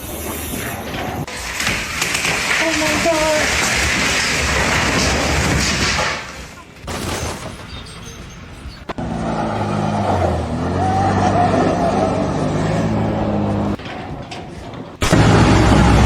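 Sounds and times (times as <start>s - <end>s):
other noisy sounds: 0.0s - 16.0s
engine running: 8.3s - 16.0s.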